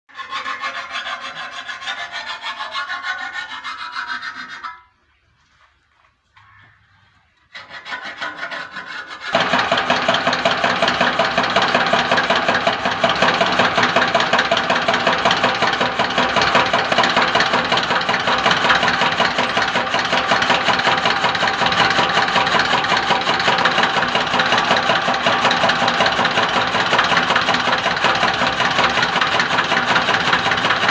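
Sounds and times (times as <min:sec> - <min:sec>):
fodder cutting machine grinding: 0:07.5 - 0:30.9.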